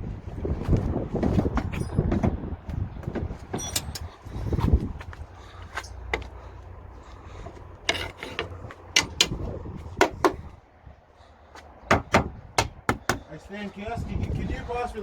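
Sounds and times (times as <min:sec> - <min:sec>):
sharp clicks and knocks: 0:07.9 - 0:09.4.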